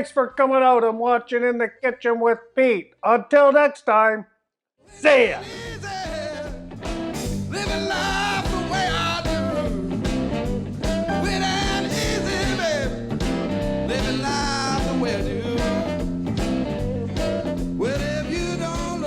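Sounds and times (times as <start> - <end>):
rock song with singing: 4.9 - 19.0.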